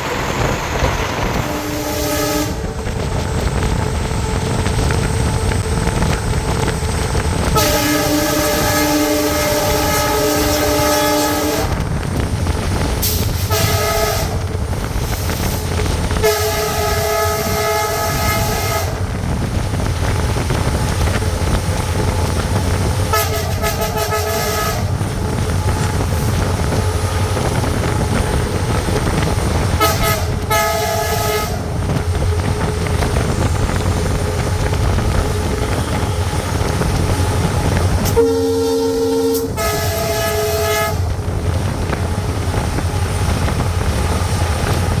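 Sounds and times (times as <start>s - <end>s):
low rumble of running train: 0.0s - 45.0s
locomotive horn blasts: 1.3s - 2.8s, 7.4s - 11.8s, 13.0s - 14.5s, 15.8s - 19.0s, 23.0s - 25.2s, 29.2s - 33.4s, 35.3s - 41.3s.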